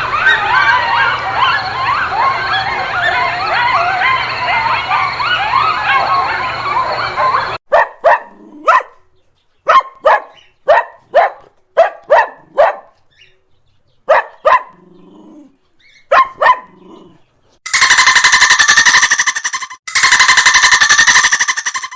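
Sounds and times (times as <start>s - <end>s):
dog barking: 5.9s - 13.0s, 14.0s - 14.8s, 16.1s - 16.9s
high-pitched animal sound: 14.8s - 21.9s.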